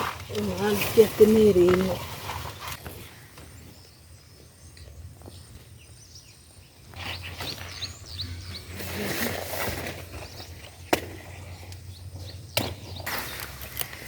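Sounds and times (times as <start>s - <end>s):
outdoor background noise: 0.0s - 14.0s
bird chirping: 3.4s - 9.3s.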